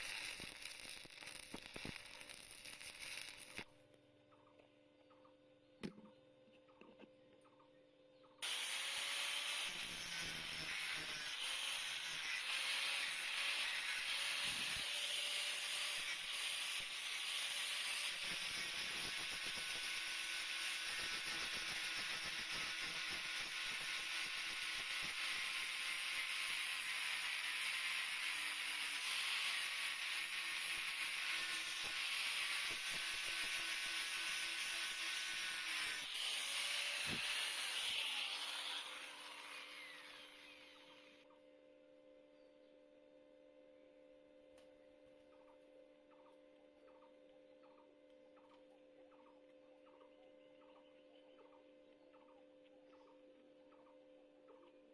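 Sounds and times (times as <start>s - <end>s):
welding arc crackling: 0.0s - 3.7s, 8.4s - 40.1s.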